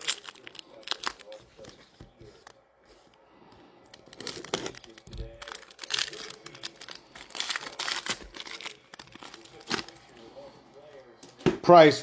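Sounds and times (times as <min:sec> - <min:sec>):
plastic wrapping crinkling and tearing: 0:00.0 - 0:02.6, 0:03.8 - 0:10.3.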